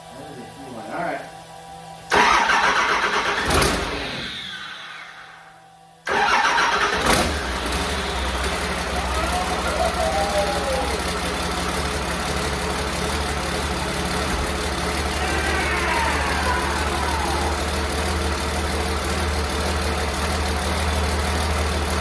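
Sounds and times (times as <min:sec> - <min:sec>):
diesel engine idling: 0:06.1 - 0:22.0.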